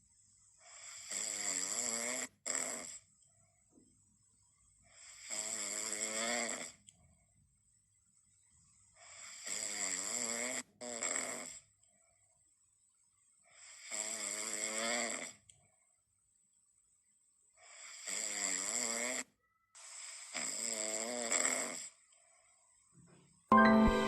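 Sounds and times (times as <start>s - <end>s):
person snoring: 5.0s - 6.8s, 20.3s - 22.0s.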